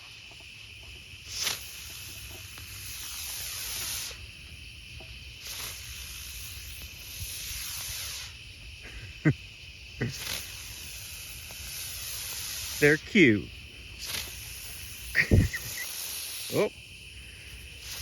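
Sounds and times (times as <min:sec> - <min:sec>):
firework hissing: 0:00.0 - 0:18.0
sharp firework pops: 0:00.3 - 0:04.2, 0:14.0 - 0:16.5.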